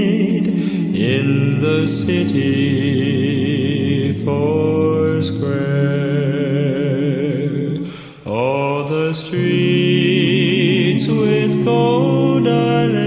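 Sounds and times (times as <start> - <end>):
vocal quartet singing a cappella: 0.0 - 13.0.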